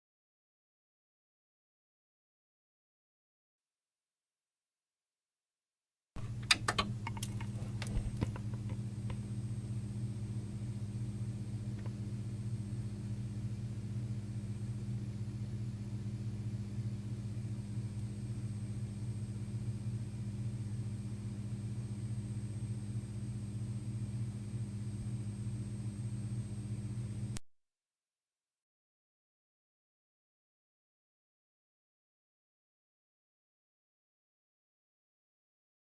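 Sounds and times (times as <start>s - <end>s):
television switching on clicks: 6.2s - 9.2s
television low hum: 6.2s - 27.4s
faint high whine: 7.6s - 27.4s.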